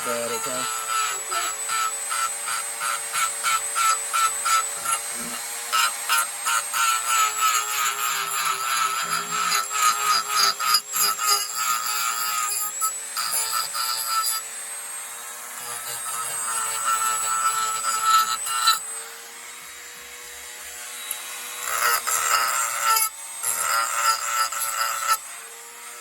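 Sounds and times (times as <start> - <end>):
sandpaper rasping on wood: 0.0 - 14.4, 15.6 - 18.8
power sander motor whine: 0.0 - 26.0.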